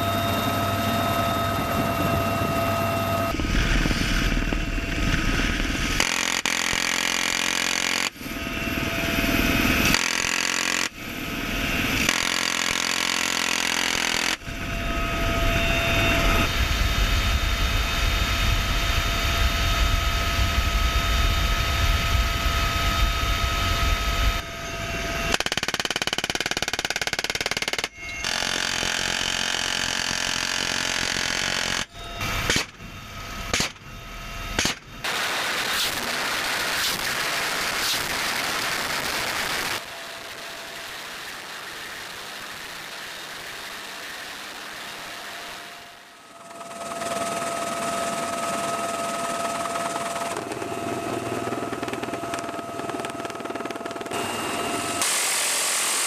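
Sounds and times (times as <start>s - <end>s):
low rumble of rotor: 0.0s - 7.4s, 13.7s - 25.4s, 45.2s - 55.0s
helicopter turbine whine: 0.0s - 56.0s.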